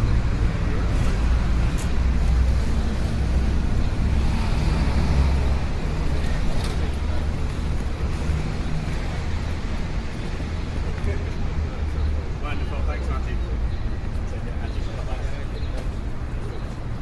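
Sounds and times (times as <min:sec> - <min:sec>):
traffic rumble: 0:00.0 - 0:17.0.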